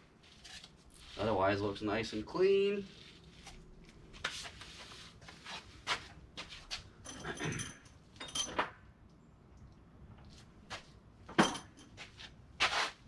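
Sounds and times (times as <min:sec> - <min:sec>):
metallic clinks: 0:07.0 - 0:08.7
short scrape: 0:12.6 - 0:13.0.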